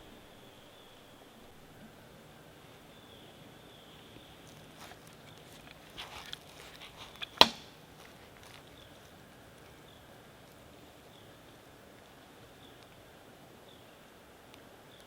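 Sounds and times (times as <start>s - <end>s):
handling clicks and rustles: 4.2s - 9.8s.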